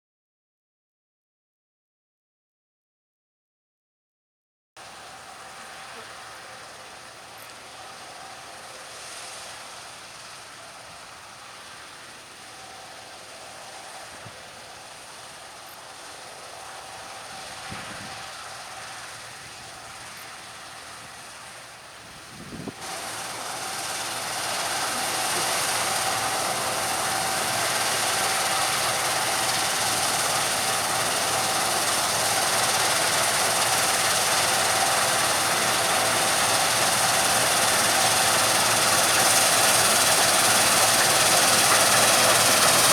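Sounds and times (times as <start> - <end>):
combine harvester hum and whine: 4.8 - 42.9.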